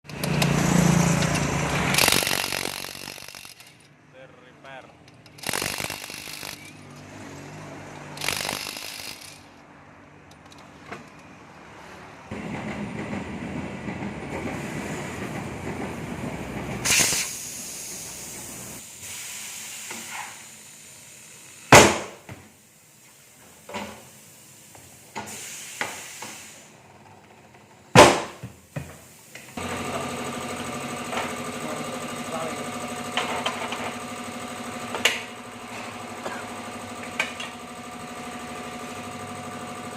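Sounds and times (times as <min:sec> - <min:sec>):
motor running steadily: 0:01.2 - 0:03.9, 0:05.0 - 0:09.5
compressed air hissing: 0:05.4 - 0:06.7, 0:16.8 - 0:20.6, 0:25.2 - 0:26.7
sharp loud knocks: 0:28.0 - 0:28.4.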